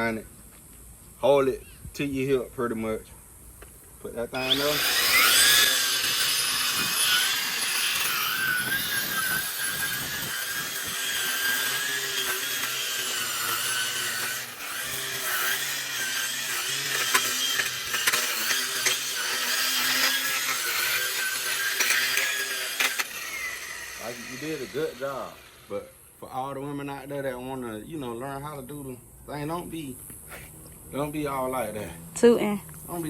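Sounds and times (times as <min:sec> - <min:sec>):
power lawn edger whining: 0:04.3 - 0:25.8.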